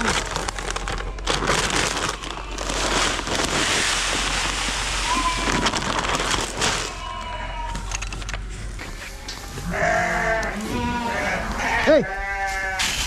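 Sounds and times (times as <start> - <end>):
feed pouring with rattling hiss: 2.4 - 7.0
sheep bleating: 5.0 - 6.0, 6.8 - 8.5, 9.4 - 13.0.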